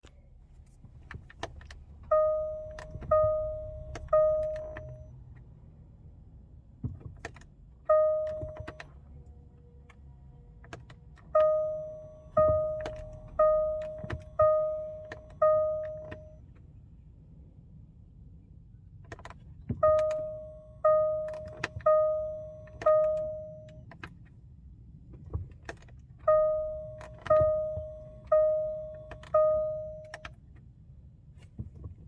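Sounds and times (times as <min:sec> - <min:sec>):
car warning chime: 0:01.0 - 0:05.2, 0:07.8 - 0:09.4, 0:11.1 - 0:16.5, 0:19.7 - 0:23.9, 0:26.2 - 0:30.4.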